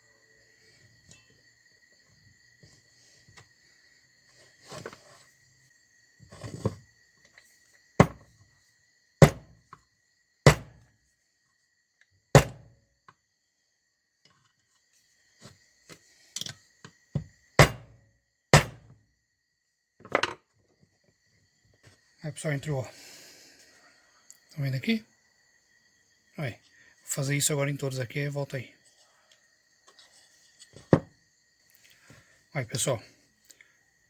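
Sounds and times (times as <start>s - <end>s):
sharp knocks on metal: 8.0s - 8.2s, 9.2s - 9.6s, 10.4s - 10.8s, 12.3s - 12.8s, 17.6s - 18.9s.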